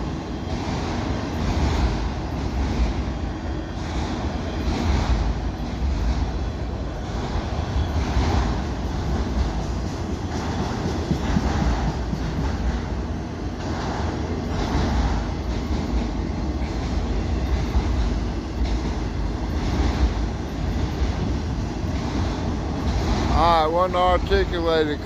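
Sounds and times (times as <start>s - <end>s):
train cars rattling and clattering: 0.0s - 25.0s
train wheels rumbling on rails: 0.0s - 25.0s.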